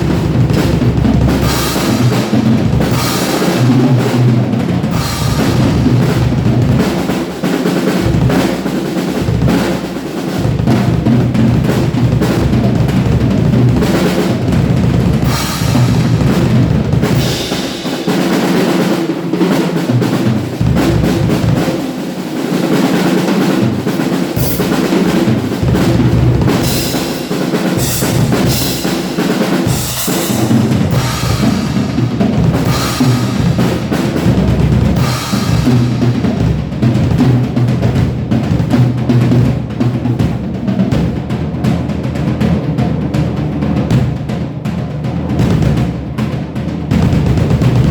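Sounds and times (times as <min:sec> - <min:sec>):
drum kit playing: 0:00.0 - 0:47.9
cymbal crashes: 0:26.6 - 0:34.0.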